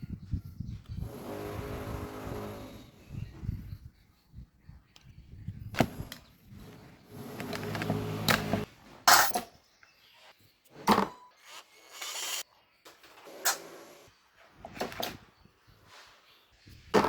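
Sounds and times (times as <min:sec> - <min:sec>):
small motor whirring: 0:01.0 - 0:03.1, 0:06.5 - 0:08.7.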